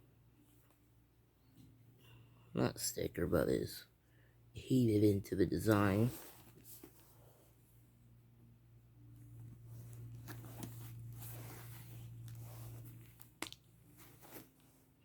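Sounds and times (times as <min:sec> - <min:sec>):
low steady hum: 0:00.0 - 0:15.0
rustling of phone packaging: 0:05.6 - 0:07.6, 0:09.4 - 0:15.0.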